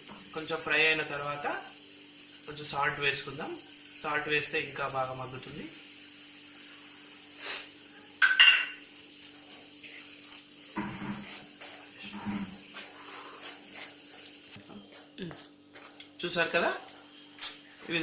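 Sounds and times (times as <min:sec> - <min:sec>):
leaves sizzling in hot oil: 0:00.0 - 0:14.6.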